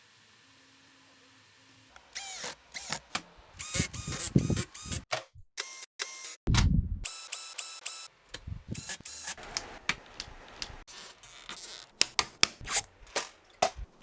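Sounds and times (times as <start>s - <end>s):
computer parts clicking and rubbing: 2.1s - 6.4s, 7.1s - 8.1s, 8.8s - 14.0s
sharp clicks: 2.2s - 10.9s, 11.5s - 12.7s.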